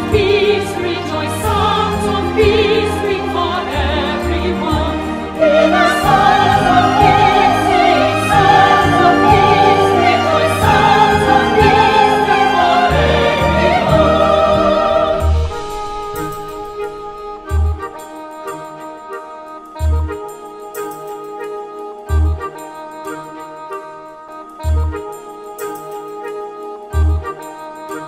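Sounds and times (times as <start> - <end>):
choir and operatic voices singing: 0.0 - 17.6
orchestral music: 0.0 - 28.0.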